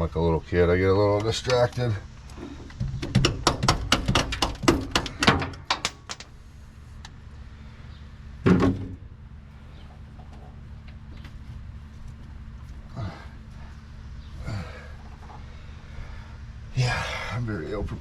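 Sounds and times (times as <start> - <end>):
tools knocking and clanking: 2.8 - 6.3.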